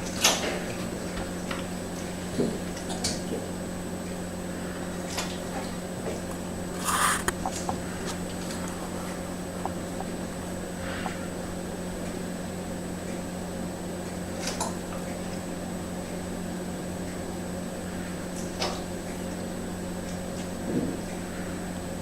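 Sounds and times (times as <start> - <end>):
steady low hum: 0.0 - 22.0
thin high whine: 6.6 - 12.7.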